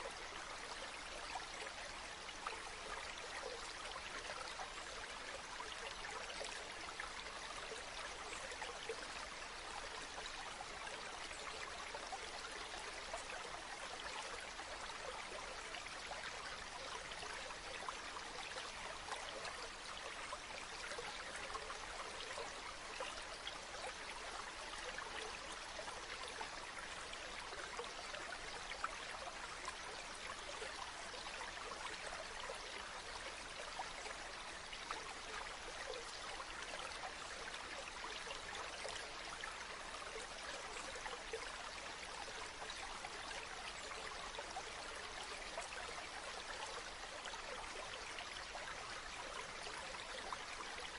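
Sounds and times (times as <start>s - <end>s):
water trickling and splashing: 0.0s - 50.9s.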